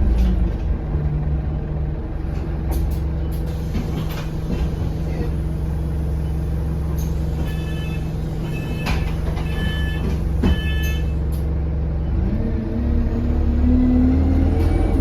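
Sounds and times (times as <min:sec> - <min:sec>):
bus engine: 0:00.0 - 0:15.0
short electronic beeps: 0:07.5 - 0:08.9.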